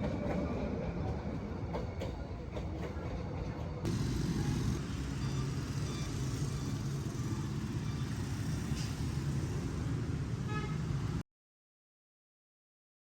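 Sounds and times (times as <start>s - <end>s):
traffic engine rumble: 2.5s - 11.2s.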